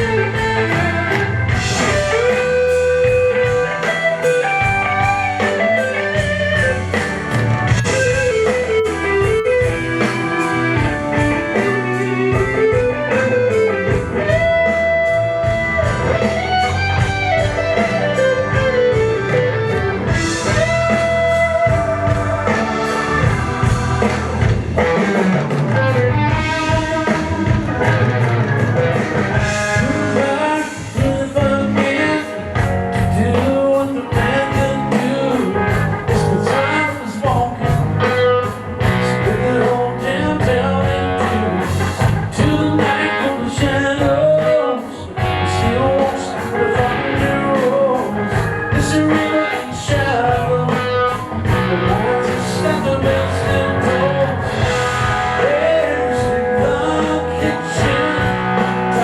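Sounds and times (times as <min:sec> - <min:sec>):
drum strokes: 0:00.0 - 0:32.0
blues-rock band playing: 0:00.0 - 0:59.0
electric guitar: 0:00.0 - 0:59.0.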